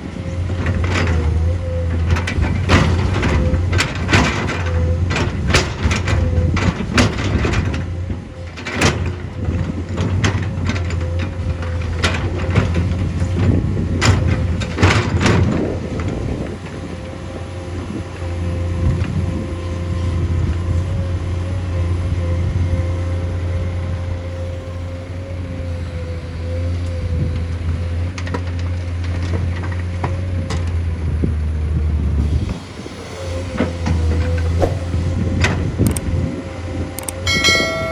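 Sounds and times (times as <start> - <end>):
diesel machine rumbling: 0.0 - 37.9
sharp metal clanks: 37.0 - 37.9.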